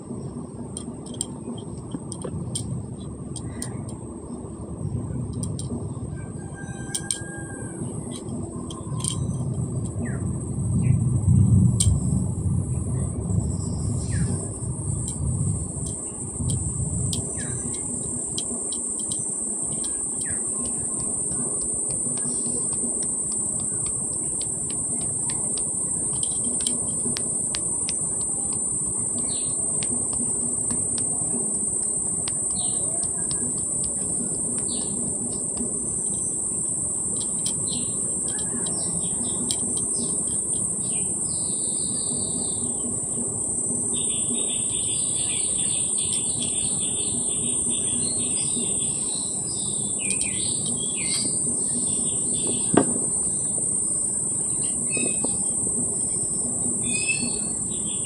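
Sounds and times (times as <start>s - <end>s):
high-pitched insect drone: 5.3s - 12.2s, 12.8s - 58.0s
sharp click: 15.0s - 41.4s
birds chirping: 18.8s - 42.8s, 54.4s - 56.2s.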